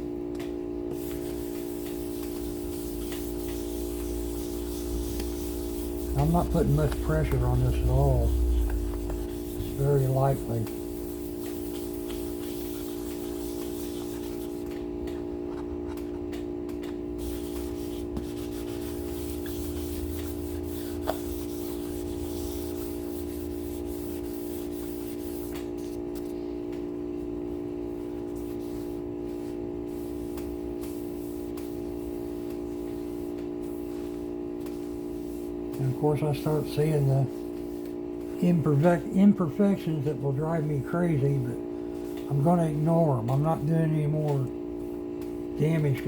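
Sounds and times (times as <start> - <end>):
freezer compressor humming: 0.0 - 46.0
wet sanding guitar body: 0.9 - 15.4, 17.1 - 26.5, 27.9 - 40.1.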